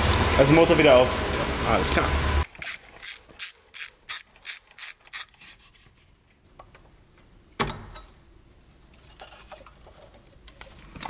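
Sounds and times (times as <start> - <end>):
ratchet wrench clicking: 2.6 - 5.4.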